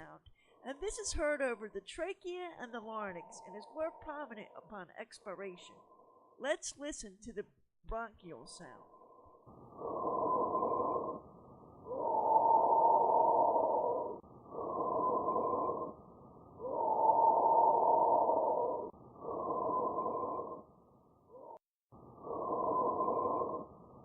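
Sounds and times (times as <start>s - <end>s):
noisy breathing airflow: 9.8s - 11.3s.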